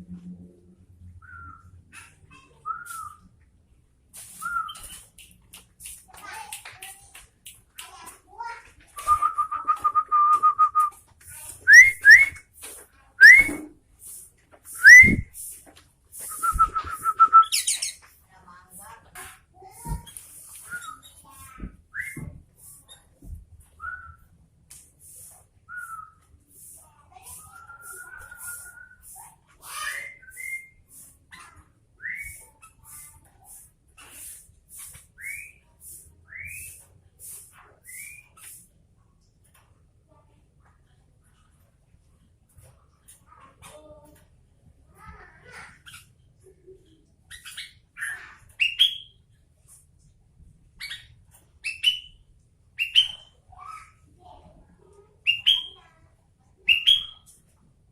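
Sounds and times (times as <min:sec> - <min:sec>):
bird singing whistled notes: 0:04.4 - 0:05.0, 0:11.7 - 0:12.4, 0:13.2 - 0:13.6, 0:14.8 - 0:15.3, 0:30.0 - 0:30.8, 0:56.7 - 0:57.2.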